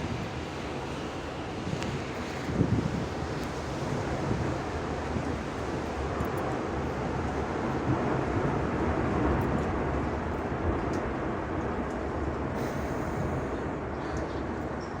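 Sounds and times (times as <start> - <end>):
tornado winds rushing: 0.0 - 15.0.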